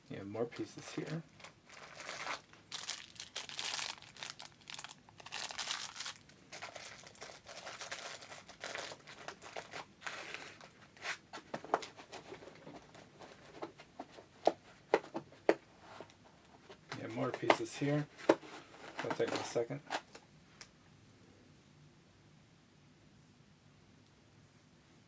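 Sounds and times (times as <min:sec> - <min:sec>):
packaging rustling and tearing: 0:00.6 - 0:16.1, 0:16.7 - 0:20.2.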